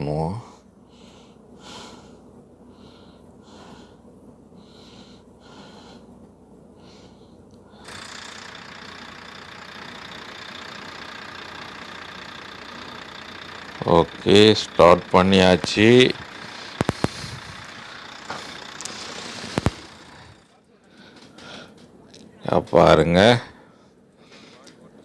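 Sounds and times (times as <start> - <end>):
diesel engine starting and idling: 7.8 - 20.6.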